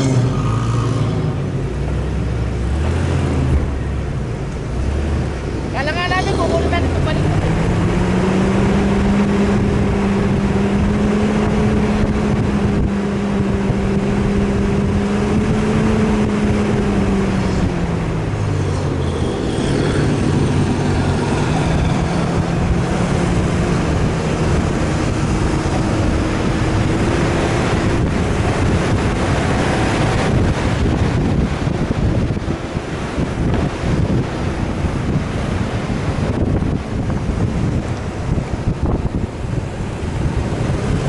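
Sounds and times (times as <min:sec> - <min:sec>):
engine running under load: 0:00.0 - 0:41.0
wind noise: 0:00.0 - 0:41.0.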